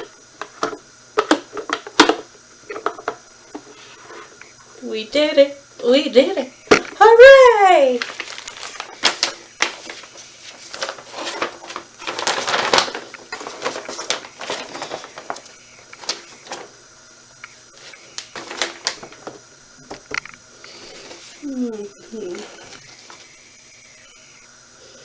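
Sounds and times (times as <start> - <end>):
rustling and clattering: 8.0 - 16.8, 17.8 - 21.5.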